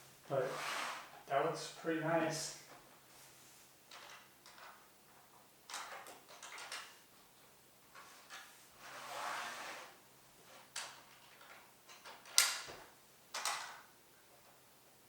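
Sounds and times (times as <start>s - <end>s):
plastic toy scraping: 0.3s - 1.2s, 8.8s - 10.0s
plastic toy clicks and knocks: 13.3s - 13.8s.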